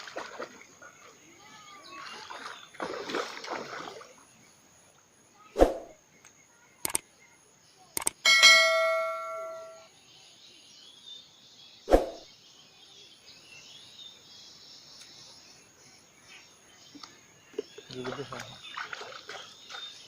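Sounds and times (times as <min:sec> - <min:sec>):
sharp clicks: 0:06.2 - 0:07.0, 0:08.0 - 0:08.2
metallic ring: 0:08.3 - 0:09.9.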